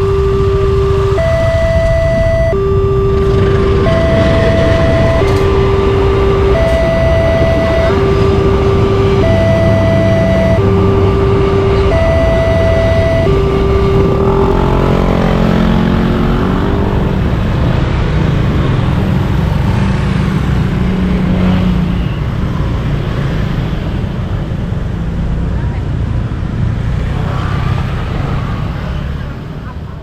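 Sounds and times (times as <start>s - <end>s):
level-crossing two-note siren: 0.0s - 17.4s
road traffic noise: 0.0s - 30.0s.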